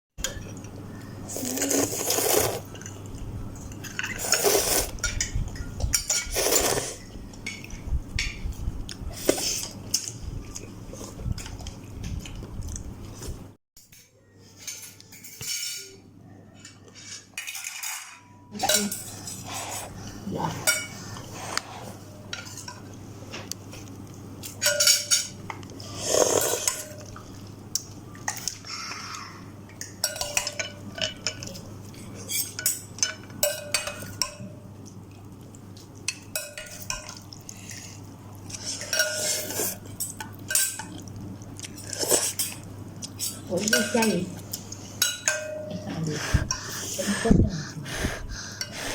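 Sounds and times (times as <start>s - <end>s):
cutlery clinking against a bowl: 3.6s - 8.6s, 13.8s - 16.0s, 16.6s - 19.6s, 20.6s - 25.7s, 26.3s - 28.6s, 29.7s - 35.2s, 35.9s - 37.8s, 38.4s - 45.9s.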